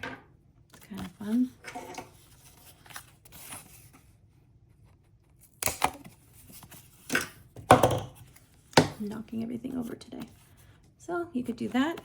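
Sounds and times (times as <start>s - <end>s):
paper rustling: 0.7s - 7.2s.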